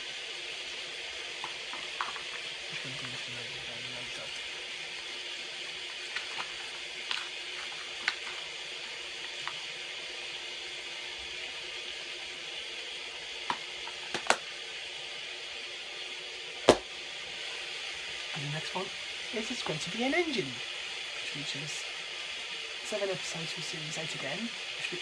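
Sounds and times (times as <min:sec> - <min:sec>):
rain hissing: 0:00.0 - 0:25.0
sharp clicks and knocks: 0:14.2 - 0:14.4.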